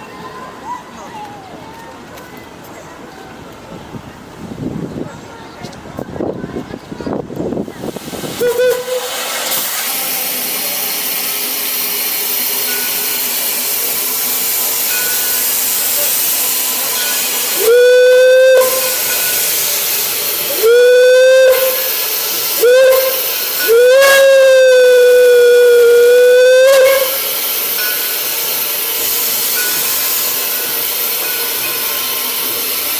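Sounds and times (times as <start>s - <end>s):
hiss of steam: 7.5s - 32.9s
steam locomotive whistle: 8.0s - 32.9s.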